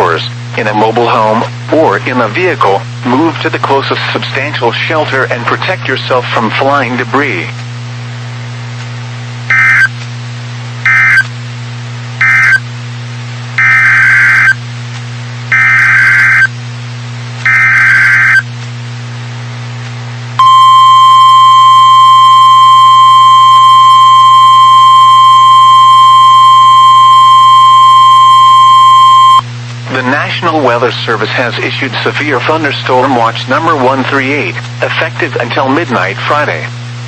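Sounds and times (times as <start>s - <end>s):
buzzing data bursts: 9.5s - 9.9s, 10.9s - 11.3s, 12.2s - 12.6s, 13.6s - 14.6s, 15.5s - 16.5s, 17.5s - 18.4s
steady warning alarm tone: 9.5s - 9.9s, 10.9s - 11.3s, 12.2s - 12.7s, 13.6s - 14.6s, 15.5s - 16.5s, 17.5s - 18.4s, 20.4s - 29.4s.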